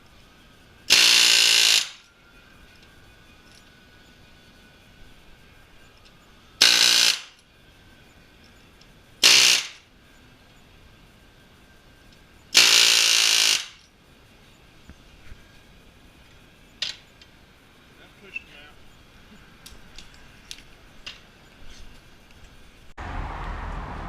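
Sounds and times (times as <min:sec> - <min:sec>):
power tool bursts: 0:00.9 - 0:02.0, 0:06.6 - 0:07.4, 0:09.2 - 0:09.8, 0:12.6 - 0:13.8.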